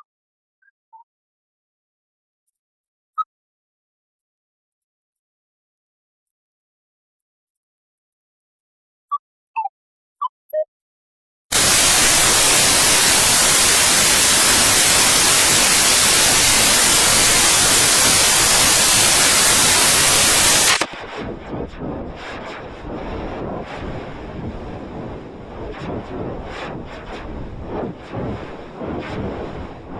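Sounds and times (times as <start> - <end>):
white noise static: 11.5 - 29.9.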